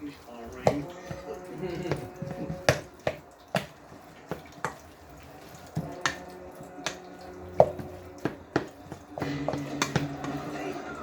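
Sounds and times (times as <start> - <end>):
utensil knocking against a pot: 0.5 - 5.0, 5.7 - 10.5.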